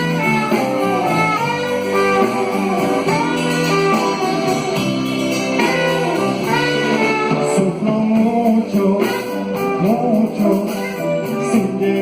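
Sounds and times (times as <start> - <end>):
instrumental music with electric guitar: 0.0 - 12.0.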